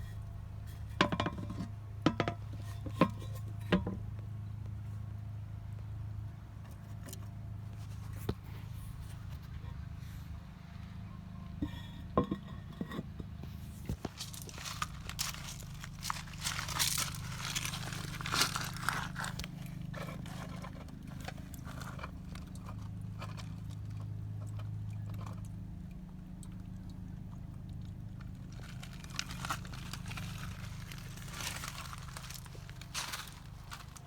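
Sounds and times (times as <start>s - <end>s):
handling clicks and scrapes: 0.0s - 4.0s, 11.5s - 25.5s, 28.2s - 34.0s.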